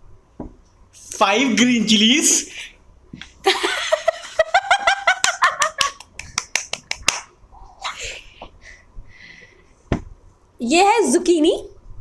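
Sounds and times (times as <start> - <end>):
person laughing: 3.4 - 6.1
rapid sharp claps: 5.2 - 7.3.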